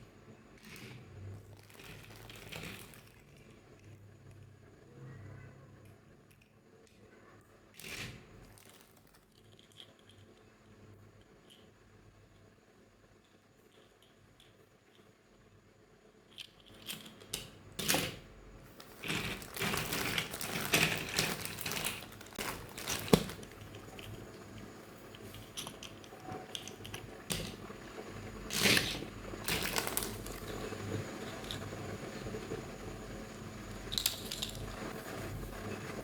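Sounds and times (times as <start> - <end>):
packaging crinkling and rustling: 0.6 - 4.0, 8.0 - 10.1, 17.8 - 32.5.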